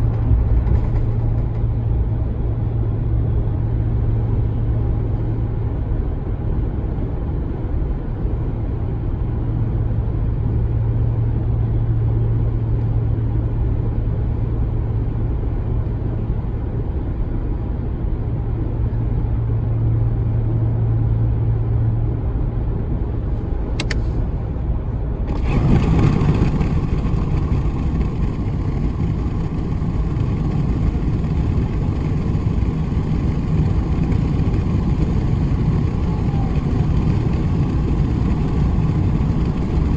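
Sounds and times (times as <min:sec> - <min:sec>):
road rumble: 0:00.0 - 0:05.1, 0:20.2 - 0:39.9
low drone in car cab: 0:00.0 - 0:39.9
wind and road noise: 0:00.0 - 0:39.9
click: 0:23.8 - 0:24.1.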